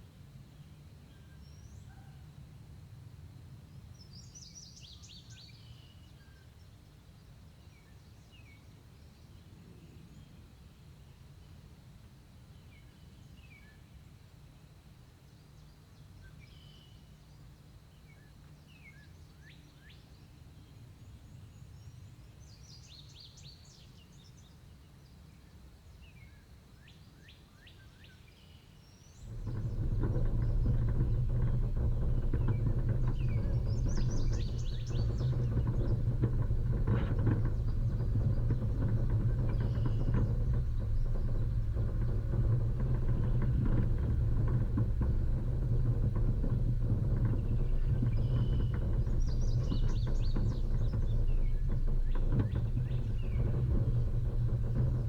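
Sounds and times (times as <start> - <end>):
birds chirping: 29.2 - 55.0
low steady rumble: 29.2 - 55.0
off-road vehicle engine running: 29.2 - 55.0.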